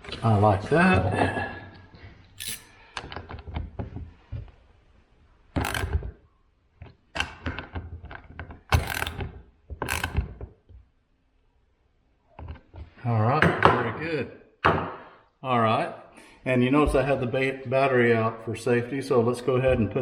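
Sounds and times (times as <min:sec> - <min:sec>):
chainsaw chain clicking: 0:02.4 - 0:02.8, 0:05.6 - 0:05.9, 0:08.8 - 0:09.2, 0:09.8 - 0:10.2.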